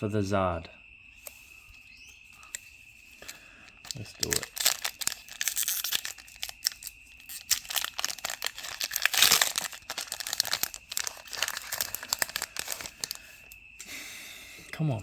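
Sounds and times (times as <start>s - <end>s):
foil wrapper crinkling and tearing: 3.2s - 13.5s.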